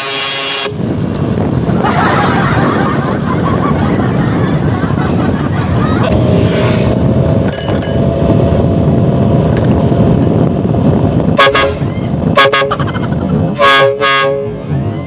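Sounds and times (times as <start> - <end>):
loud bus horn blasts: 0.0 - 1.1, 11.3 - 12.9, 13.5 - 14.7
road traffic noise: 0.0 - 15.0.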